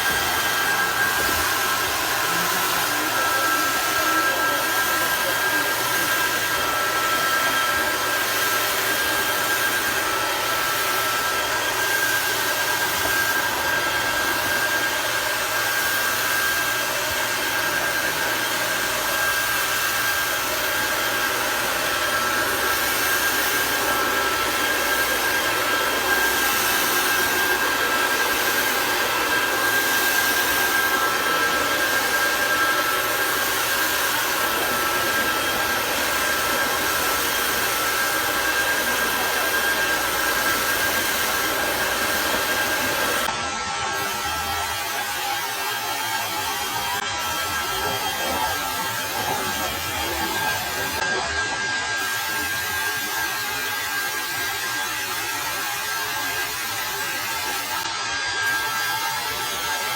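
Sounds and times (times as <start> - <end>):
small electric motor whining: 0.0 - 59.9
continuous spray hiss: 19.2 - 43.3.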